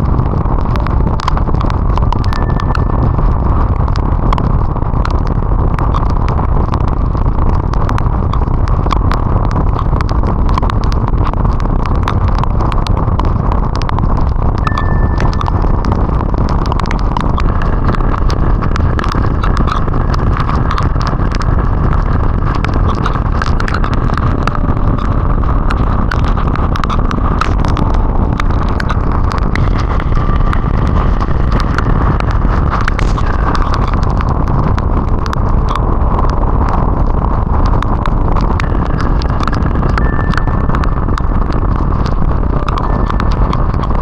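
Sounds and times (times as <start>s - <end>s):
raindrops ticking on camera: 0.0s - 44.0s
wind rush: 0.0s - 44.0s.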